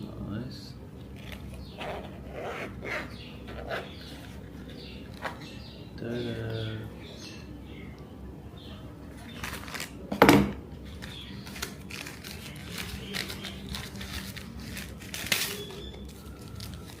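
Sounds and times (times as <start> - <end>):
packaging crinkling and tearing: 9.3 - 10.0, 10.9 - 17.0.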